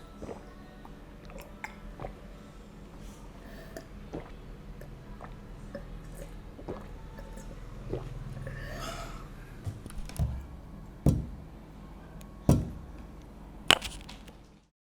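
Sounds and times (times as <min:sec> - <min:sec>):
sharp knocks: 0:09.7 - 0:11.5, 0:12.5 - 0:13.0.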